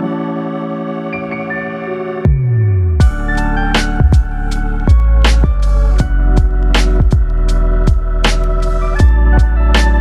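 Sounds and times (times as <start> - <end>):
organ-like chords: 0.0 - 10.0
low bass note sliding down: 2.2 - 10.0.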